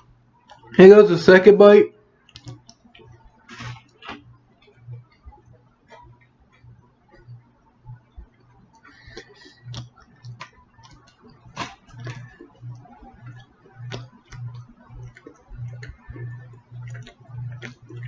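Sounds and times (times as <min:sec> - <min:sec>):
person chewing food: 0:08.9 - 0:18.0
wet mouth clicks and smacks: 0:09.1 - 0:12.2.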